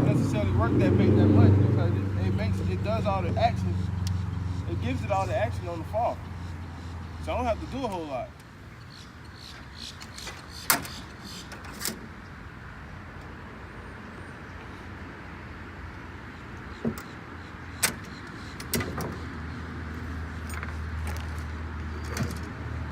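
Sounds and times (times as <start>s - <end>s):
low engine hum: 0.0s - 8.2s
road traffic: 0.0s - 22.9s.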